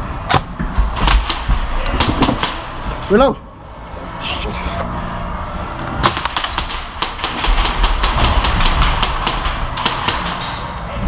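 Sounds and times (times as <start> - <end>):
airsoft guns firing: 0.3 - 2.8, 6.0 - 10.8.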